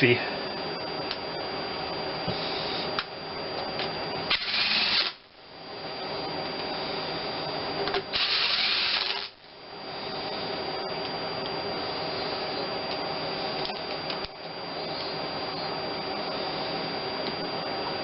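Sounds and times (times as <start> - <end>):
steady background hum: 0.0 - 18.0
power drill running: 4.3 - 5.2, 8.1 - 9.4.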